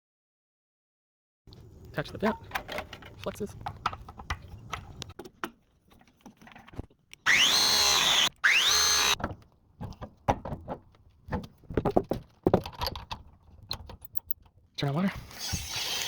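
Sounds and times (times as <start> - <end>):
clicks and knocks of parts handled: 1.8 - 7.2, 9.2 - 14.6
cordless drill whine: 7.3 - 9.2.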